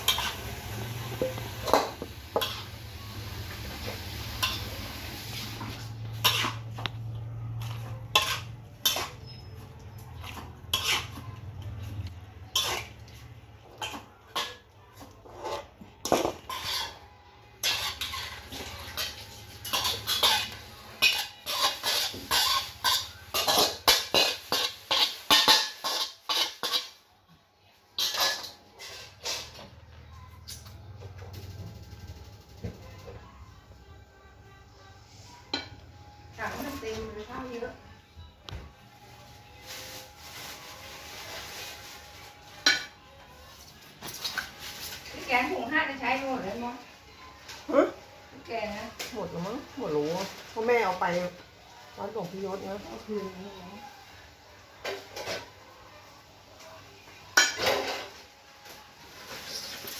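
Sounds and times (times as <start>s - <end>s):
metal utensils clinking on pots: 0.0s - 27.0s, 28.0s - 29.8s, 42.3s - 43.2s, 54.7s - 55.6s, 57.2s - 58.2s.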